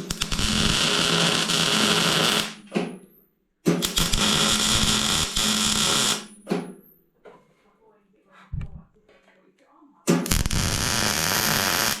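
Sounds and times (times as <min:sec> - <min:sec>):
welder crackling hiss: 0:00.0 - 0:02.6, 0:03.8 - 0:06.3, 0:10.3 - 0:12.0.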